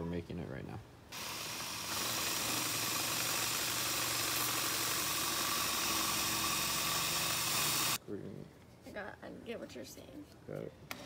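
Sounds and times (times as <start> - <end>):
power tool hissing on steel: 1.1 - 8.0.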